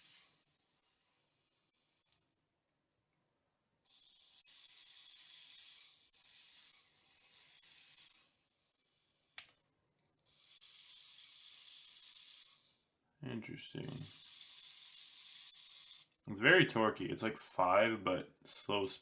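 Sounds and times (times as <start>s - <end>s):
electric screwdriver motor whining: 10.2s - 12.7s, 13.8s - 16.2s.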